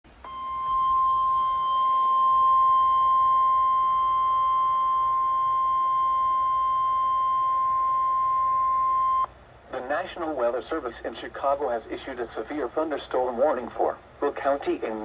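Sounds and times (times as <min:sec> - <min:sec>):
high-pitched warning alarm tone: 0:00.2 - 0:09.3.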